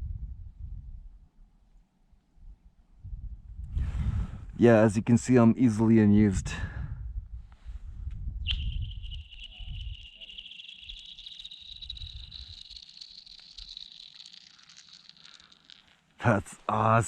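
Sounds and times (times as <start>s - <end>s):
high-pitched ringing whine from ice: 8.5s - 16.3s
quick ticks of piece skittering: 8.5s - 16.3s.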